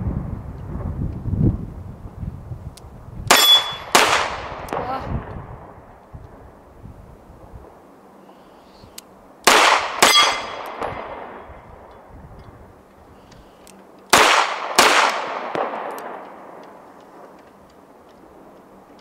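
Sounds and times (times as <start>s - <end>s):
pistol shots with ringing echo: 3.3s - 4.9s, 9.4s - 11.5s, 14.1s - 16.6s.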